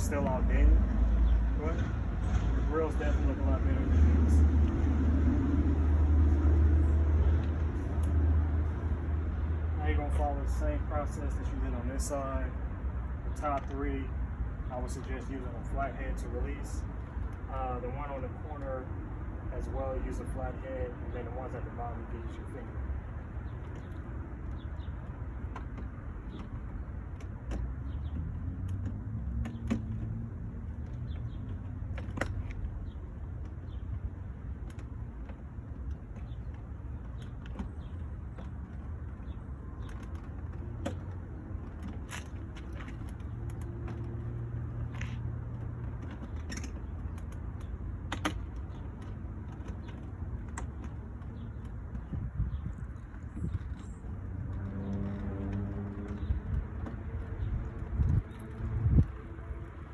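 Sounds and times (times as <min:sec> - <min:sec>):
steady low rumble: 0:50.2 - 0:59.9.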